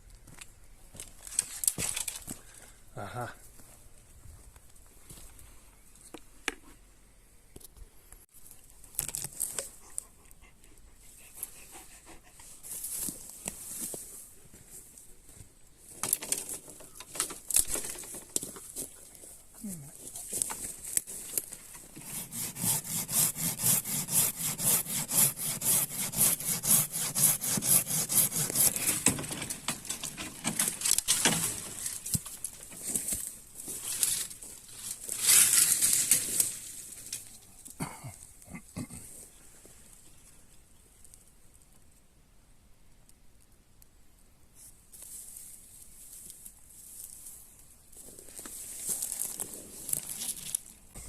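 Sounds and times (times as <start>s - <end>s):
twigs crackling and snapping: 0.3s - 2.6s, 8.6s - 10.0s, 15.9s - 19.4s, 20.0s - 21.9s, 28.5s - 37.8s, 48.0s - 50.8s
hand saw cutting wood: 21.8s - 29.6s.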